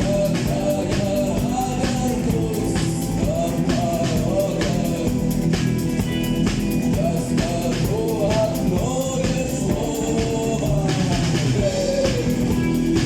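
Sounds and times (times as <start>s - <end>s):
person singing: 0.0s - 5.6s, 6.9s - 13.0s
live rock band playing: 0.0s - 13.0s.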